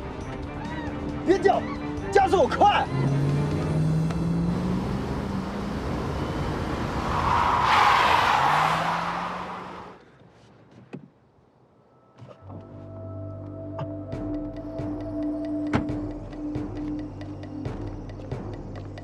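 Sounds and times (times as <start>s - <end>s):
tyres skidding: 0.1s - 11.0s
car engine revving: 2.4s - 10.0s.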